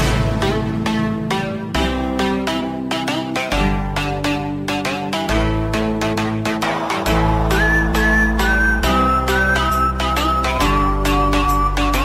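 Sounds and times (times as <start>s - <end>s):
music with steady beat: 0.0s - 12.0s
high whistle-like melody: 6.6s - 12.0s.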